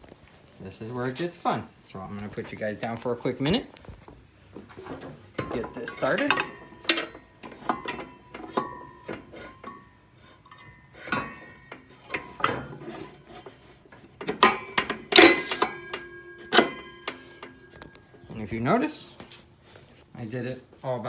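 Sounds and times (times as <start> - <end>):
metal clanks and knocks: 4.1 - 19.4.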